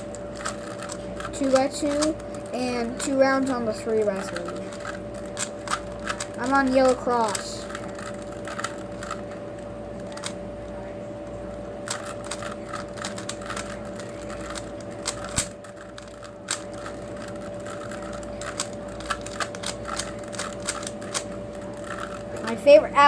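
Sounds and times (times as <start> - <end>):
puzzle cube plastic clicks: 0.0 - 10.4, 11.8 - 22.6
sharp plastic clacks: 0.0 - 10.4, 11.8 - 22.6
faint steady hum: 0.0 - 23.0.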